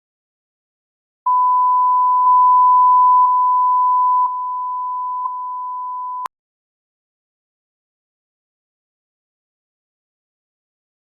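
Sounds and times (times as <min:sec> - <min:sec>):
sine test tone: 0:01.3 - 0:06.3.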